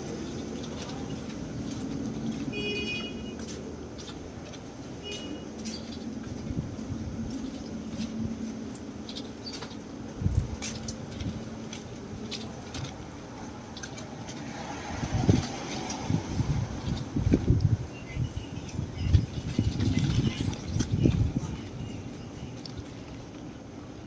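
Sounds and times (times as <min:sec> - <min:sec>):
low traffic hum: 0:00.0 - 0:24.0
light clicks and knocks: 0:04.0 - 0:14.4
high chirp: 0:05.0 - 0:12.8.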